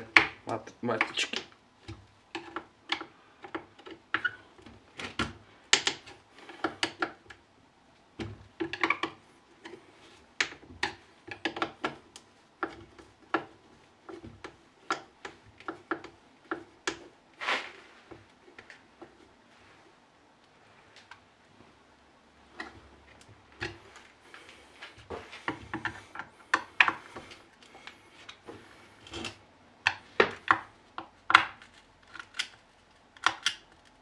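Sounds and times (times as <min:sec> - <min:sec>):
metal scrape: 0:17.4 - 0:18.0.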